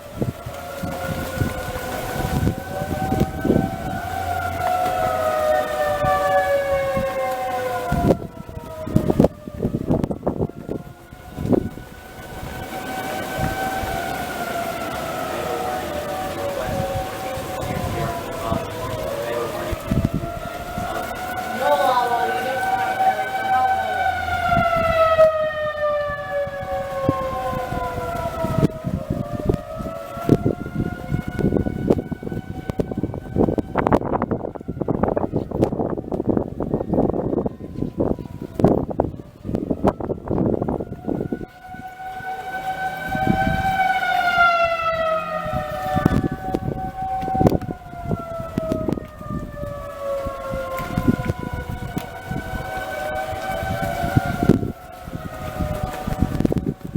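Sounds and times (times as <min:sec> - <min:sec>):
low rumbling thumps: 0:00.0 - 0:12.6
tornado warning siren wailing: 0:00.0 - 0:56.9.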